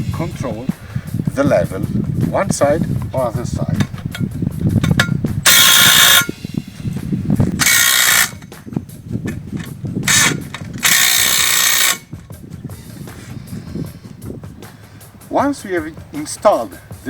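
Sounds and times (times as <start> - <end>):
power drill driving screws: 5.5 - 6.3, 7.6 - 8.4, 10.1 - 12.0.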